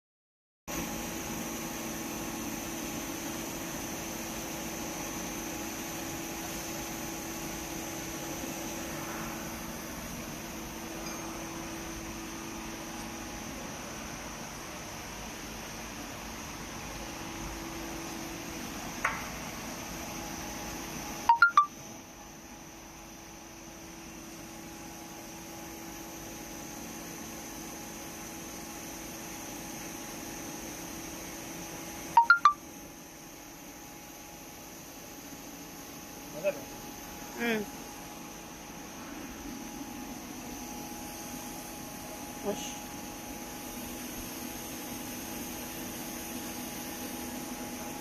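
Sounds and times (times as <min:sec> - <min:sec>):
high machine whine: 0:00.7 - 0:25.3
electronic beeps: 0:21.3 - 0:21.7, 0:32.2 - 0:32.6.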